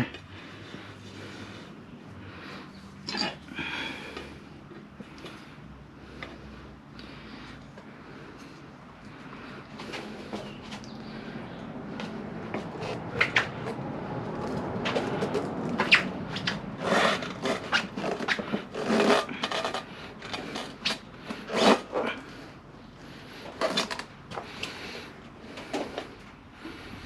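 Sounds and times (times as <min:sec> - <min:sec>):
tire tools scraping wheel rim: 0:12.0 - 0:22.5, 0:23.3 - 0:26.9.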